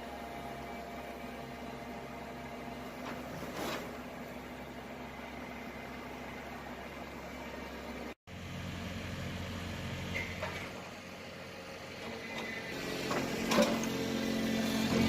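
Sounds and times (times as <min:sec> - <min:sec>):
wheel loader engine hum: 0:00.0 - 0:15.0
metallic clanks and knocks: 0:12.4 - 0:13.9.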